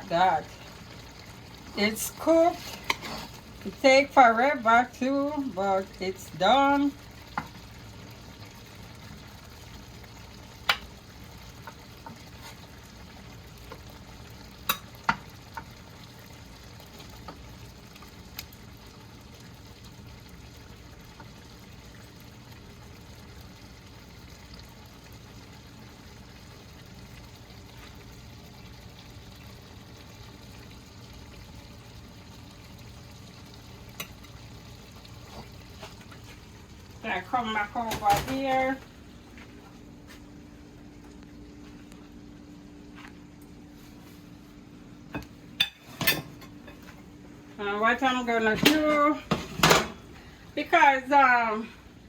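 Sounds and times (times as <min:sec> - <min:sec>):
utensil clinking on pot and plate: 0:45.2 - 0:46.8.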